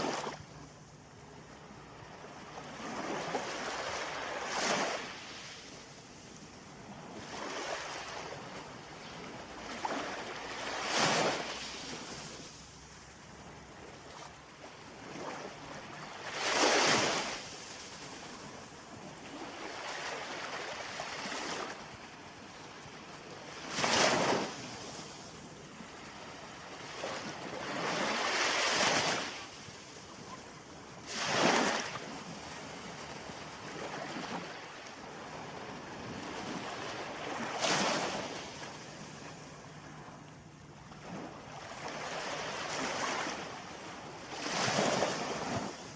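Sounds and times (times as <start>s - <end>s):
ocean waves breaking: 31.1s - 40.2s.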